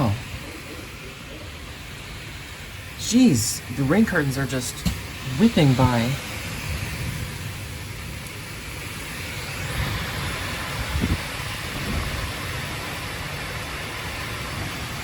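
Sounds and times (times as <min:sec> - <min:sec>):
heavy rain downpour: 0:00.0 - 0:15.0.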